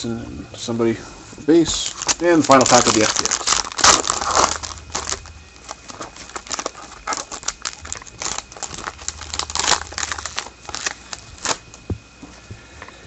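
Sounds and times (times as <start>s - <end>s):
card pack wrapper crinkling: 1.7s - 11.7s.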